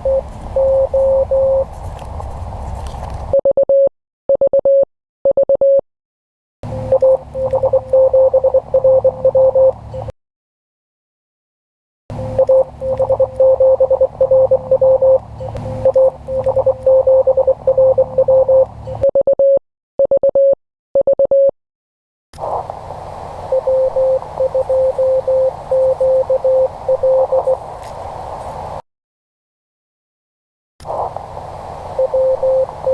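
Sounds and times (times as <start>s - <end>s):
morse code tone: 0.0s - 1.7s, 6.7s - 10.1s, 12.1s - 21.5s, 23.5s - 27.6s, 32.0s - 32.9s
radio receiver hiss: 22.4s - 28.8s, 30.8s - 32.9s.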